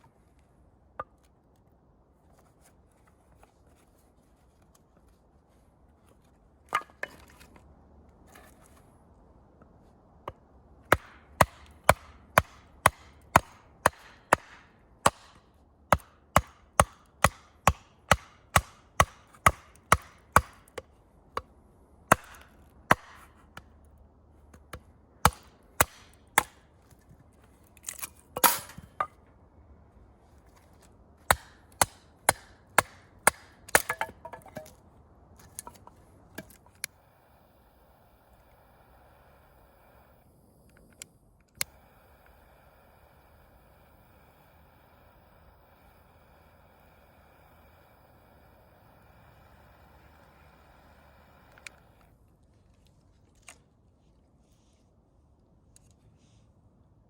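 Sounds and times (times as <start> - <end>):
blade chopping wood: 10.3 - 21.5, 22.1 - 23.6, 24.6 - 26.6, 31.2 - 34.8.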